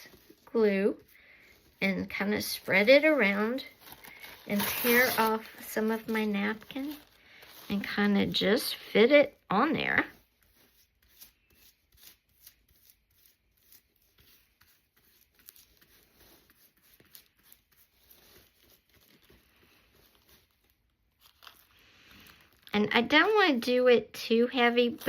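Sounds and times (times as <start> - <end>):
paper napkin tearing and rustling: 0.0 - 8.9, 9.9 - 22.7.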